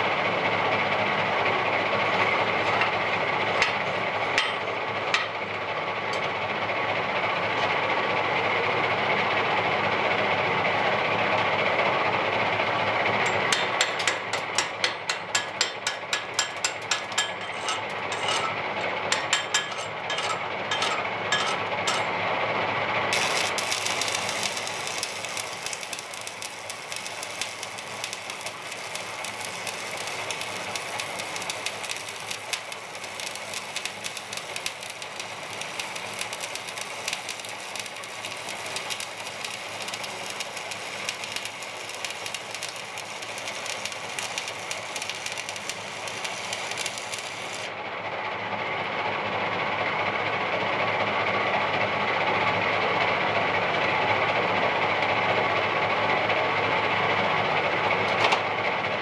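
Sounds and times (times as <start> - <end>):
electric welding arc crackling: 23.1 - 47.8.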